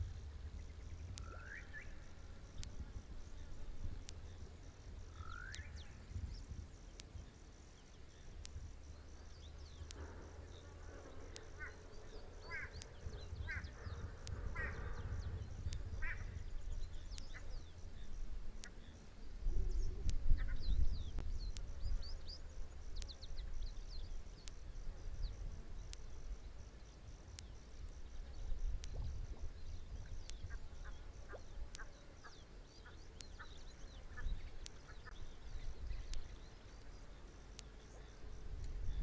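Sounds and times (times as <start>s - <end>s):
steady low rumble: 0.0s - 31.5s
high insect drone: 0.0s - 39.0s
wild birds calling: 11.4s - 17.8s.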